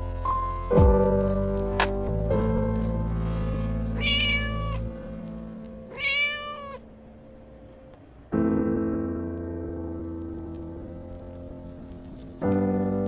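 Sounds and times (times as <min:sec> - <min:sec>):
soft piano music: 0:00.0 - 0:13.0
kitten meowing: 0:03.9 - 0:05.2, 0:05.9 - 0:06.8.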